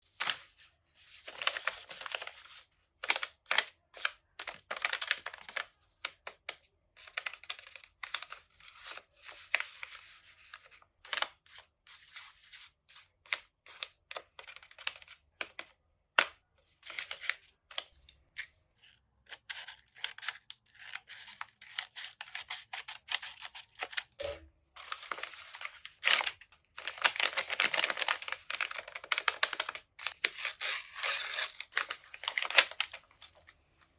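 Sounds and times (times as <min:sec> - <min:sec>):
paper crinkling and tearing: 0:00.2 - 0:05.7, 0:18.8 - 0:24.2, 0:24.8 - 0:33.5.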